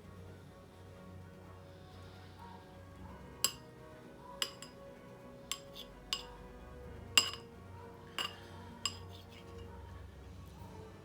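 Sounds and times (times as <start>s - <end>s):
quiet background music: 0.0s - 11.0s
metal utensil clinking on dishware: 3.4s - 3.6s, 4.4s - 4.8s, 5.5s - 6.4s, 7.2s - 7.5s, 8.2s - 9.6s.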